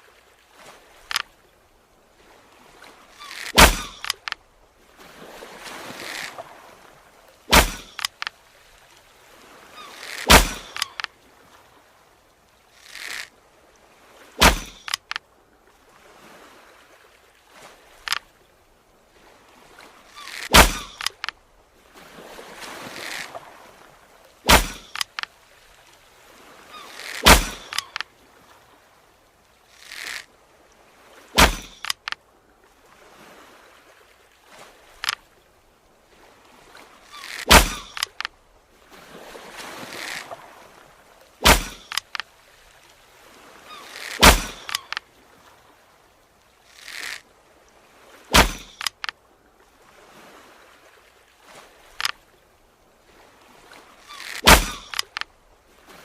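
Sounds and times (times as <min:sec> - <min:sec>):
arrow impact: 0:03.3 - 0:04.4, 0:07.5 - 0:08.3, 0:10.0 - 0:11.1, 0:14.4 - 0:15.2, 0:20.3 - 0:21.3, 0:24.5 - 0:25.2, 0:27.0 - 0:28.0, 0:31.4 - 0:32.2, 0:37.2 - 0:38.3, 0:41.4 - 0:42.2, 0:44.0 - 0:45.0, 0:48.3 - 0:49.1, 0:54.2 - 0:55.2
arrow whooshing: 0:03.3 - 0:04.4, 0:07.5 - 0:08.2, 0:10.1 - 0:11.1, 0:14.4 - 0:15.0, 0:20.3 - 0:21.3, 0:24.5 - 0:25.1, 0:27.0 - 0:28.0, 0:31.4 - 0:32.0, 0:37.2 - 0:38.2, 0:41.4 - 0:42.0, 0:44.0 - 0:45.0, 0:48.3 - 0:49.0, 0:54.2 - 0:55.2.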